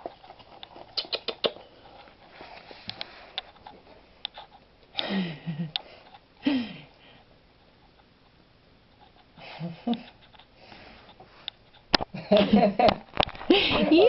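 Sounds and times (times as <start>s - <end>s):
puppy snuffling: 0.1s - 4.0s
puppy sniffing: 0.7s - 3.6s.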